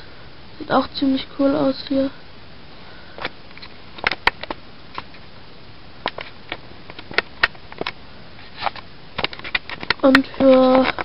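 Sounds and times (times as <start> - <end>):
toy packaging clicks and taps: 3.2 - 5.1, 6.9 - 8.0, 9.2 - 11.0.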